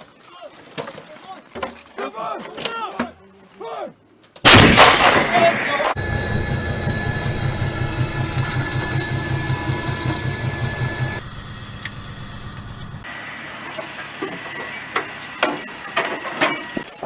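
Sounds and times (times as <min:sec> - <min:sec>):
artillery blast: 0:04.4 - 0:06.0
machine running with low throb: 0:06.0 - 0:13.3.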